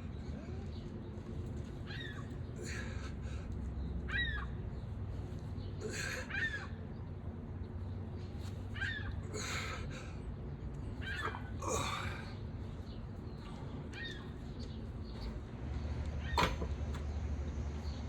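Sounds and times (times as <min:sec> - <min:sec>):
low background rumble: 0:00.0 - 0:18.0
birds giving short calls: 0:01.7 - 0:07.0, 0:10.8 - 0:15.4.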